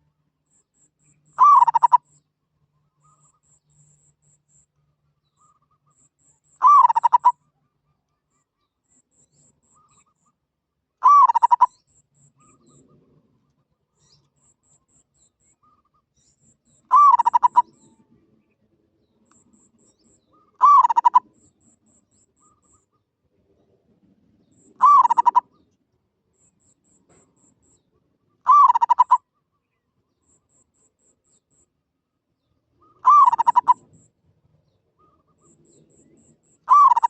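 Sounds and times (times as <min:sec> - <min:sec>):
dove cooing with trill: 0:01.4 - 0:02.0, 0:06.6 - 0:07.4, 0:11.0 - 0:11.7, 0:16.9 - 0:18.0, 0:20.6 - 0:21.3, 0:24.8 - 0:25.5, 0:28.4 - 0:29.2, 0:32.8 - 0:34.0, 0:36.7 - 0:37.0.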